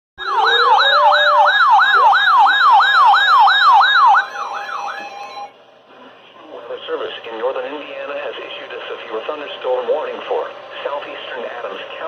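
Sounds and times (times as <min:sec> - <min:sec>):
electronic siren yelping: 0:00.2 - 0:05.6.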